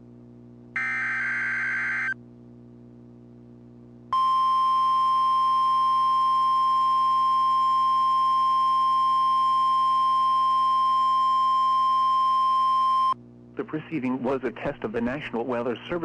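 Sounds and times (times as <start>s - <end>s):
steady alarm tone: 0.8s - 2.2s.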